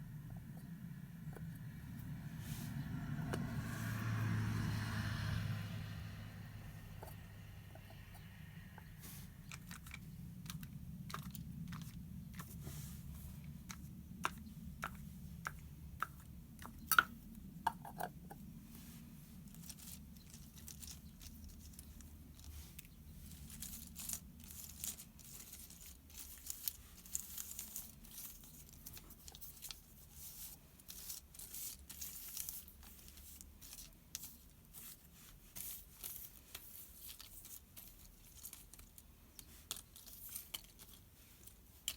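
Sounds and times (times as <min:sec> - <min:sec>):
paper rustling and crinkling: 0:19.4 - 0:41.9
paper clips clinking: 0:19.5 - 0:41.9.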